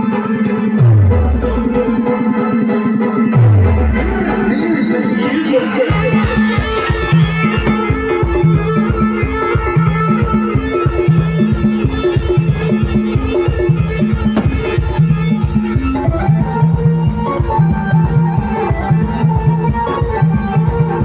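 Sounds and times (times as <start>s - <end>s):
keyboard lines: 1.2s - 9.5s
fast drum beat: 5.9s - 9.4s, 14.2s - 16.3s
low bass riff: 7.2s - 8.9s.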